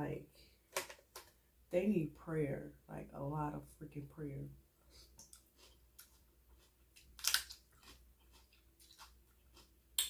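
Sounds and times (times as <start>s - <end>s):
chewing with wet clicks: 5.2s - 10.0s
sharp crunch: 5.2s - 10.0s.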